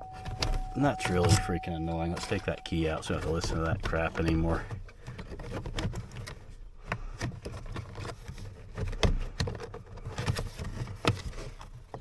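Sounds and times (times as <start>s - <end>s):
low steady hum: 0.0s - 7.0s.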